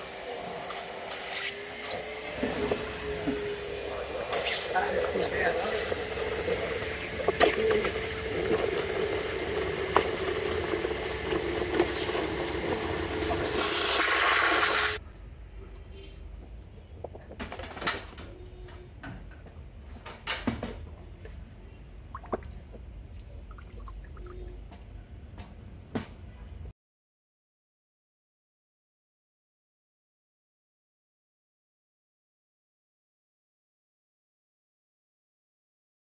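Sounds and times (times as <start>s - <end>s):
vacuum cleaner running: 0.0s - 15.0s.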